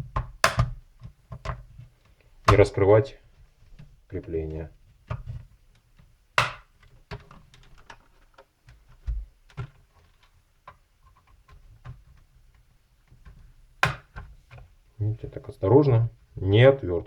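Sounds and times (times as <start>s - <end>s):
plastic latches clicking and snapping: 0.1s - 1.6s.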